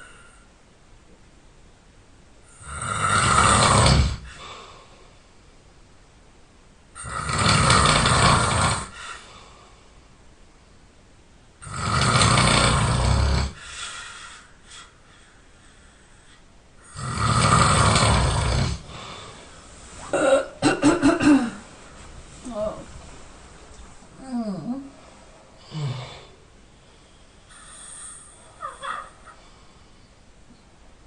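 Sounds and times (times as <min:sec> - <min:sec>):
person snoring loudly: 0:02.5 - 0:04.5, 0:07.0 - 0:09.2, 0:11.6 - 0:13.6, 0:16.8 - 0:19.4, 0:25.6 - 0:26.4.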